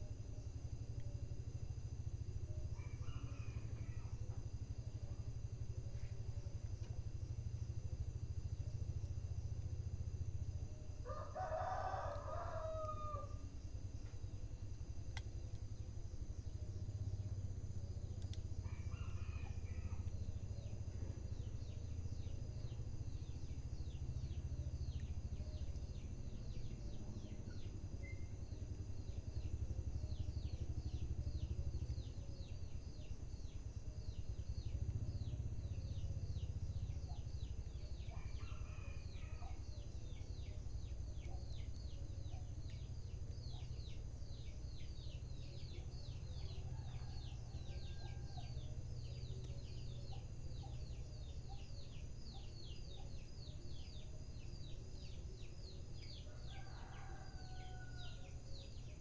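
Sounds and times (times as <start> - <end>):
rooster crowing: 2.8 - 4.1, 11.0 - 13.5, 18.6 - 20.1, 56.3 - 58.3.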